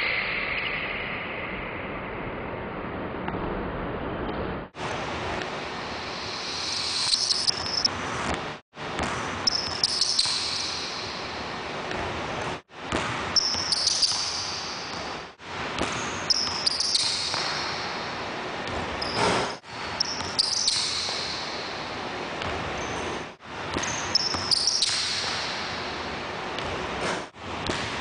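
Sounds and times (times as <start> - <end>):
sneaker squeaks: 6.5 - 8.4, 9.0 - 11.3, 13.3 - 15.2, 15.8 - 17.8, 18.7 - 21.8, 22.4 - 25.6
basketball bouncing on gym floor: 7.0 - 11.2, 12.9 - 17.9, 18.6 - 21.5, 23.7 - 25.6, 27.6 - 28.0.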